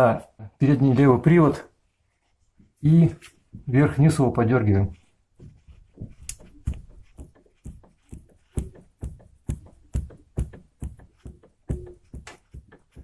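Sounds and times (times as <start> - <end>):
drive shaft knocking: 6.8 - 13.0.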